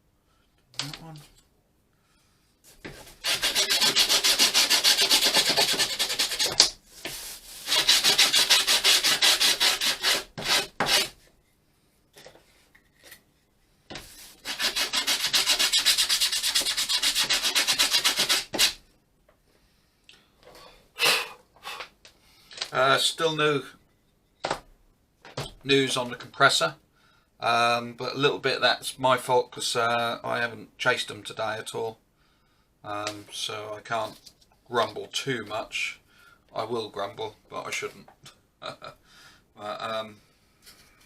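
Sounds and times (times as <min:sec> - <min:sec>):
hand sanding plywood: 0:02.8 - 0:11.2, 0:13.9 - 0:18.8.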